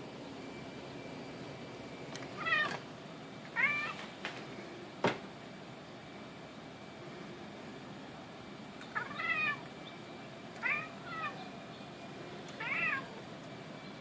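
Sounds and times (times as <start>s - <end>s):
cat meowing: 2.4s - 2.8s, 3.6s - 4.0s, 8.9s - 9.6s, 10.6s - 11.4s, 12.6s - 13.1s.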